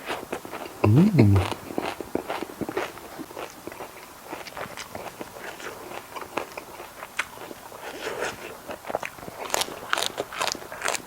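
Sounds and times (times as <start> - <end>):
crunchy food chewing: 0.1 - 11.0
mouth clicks: 0.8 - 1.6.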